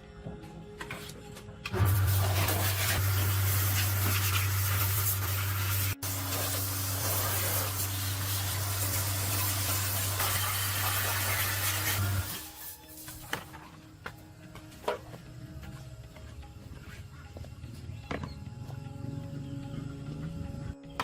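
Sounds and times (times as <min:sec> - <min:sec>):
high-pressure spray hissing: 0:01.8 - 0:13.2
low motor hum: 0:15.2 - 0:21.0.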